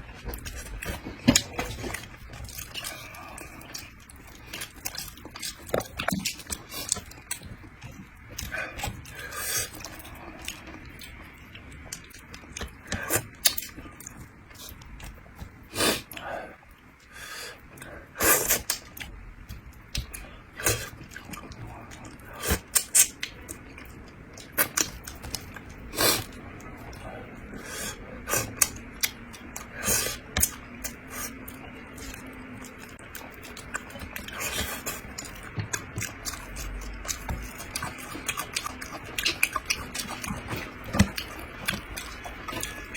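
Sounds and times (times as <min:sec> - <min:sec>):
person chewing food: 0:00.0 - 0:42.9.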